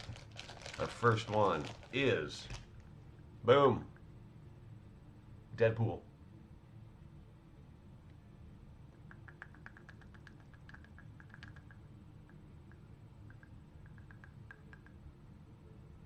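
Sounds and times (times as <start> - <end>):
plastic packaging crinkling: 0.0 - 2.9.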